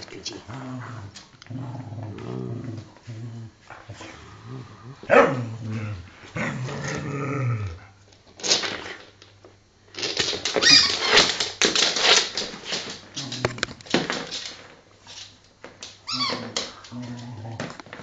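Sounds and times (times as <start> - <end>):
dog barking and growling: 3.8 - 8.0
scuffling and clicking: 8.2 - 18.0.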